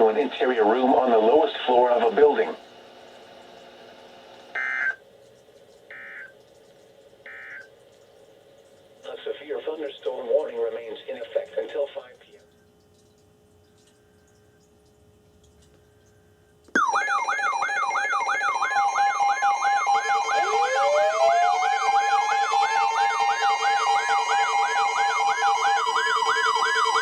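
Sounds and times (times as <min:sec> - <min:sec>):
steady alarm tones: 0:04.5 - 0:05.0, 0:05.9 - 0:06.4, 0:07.2 - 0:07.7, 0:16.8 - 0:27.0
warbling siren-like alarm: 0:04.5 - 0:05.0, 0:05.9 - 0:06.3, 0:07.2 - 0:07.7, 0:16.8 - 0:27.0
rising alarm tone: 0:16.8 - 0:27.0.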